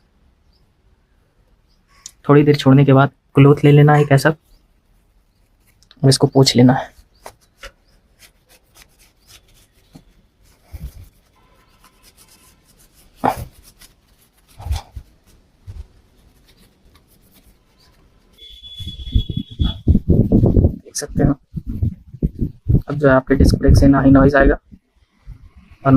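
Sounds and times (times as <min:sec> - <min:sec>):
cloth rubbing brake rotor: 0:06.9 - 0:20.8.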